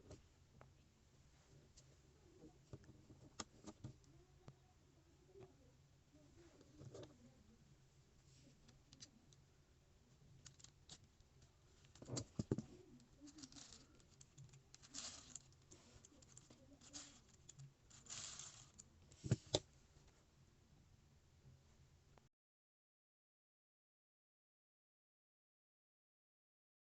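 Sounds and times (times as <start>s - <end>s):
plastic parts clicking: 10.4s - 11.1s, 11.8s - 19.6s
plastic parts scraping: 11.8s - 19.6s.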